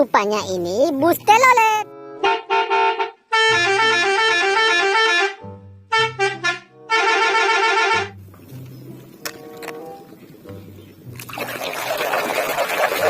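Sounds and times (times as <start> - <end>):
multi-tone bus horn tune: 2.0 - 8.2.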